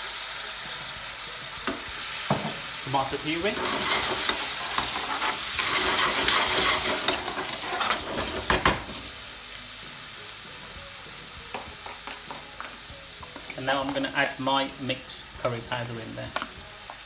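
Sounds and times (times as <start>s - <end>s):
onions sizzling in oil: 0.0s - 17.0s
spoon knocking against pan: 6.2s - 9.0s, 11.5s - 14.0s.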